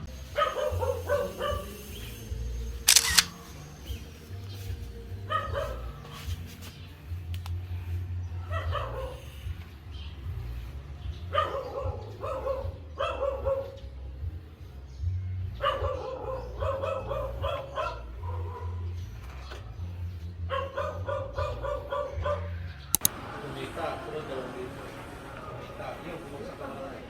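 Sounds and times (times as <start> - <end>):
small dog yipping: 0.4 - 1.8, 11.3 - 13.8.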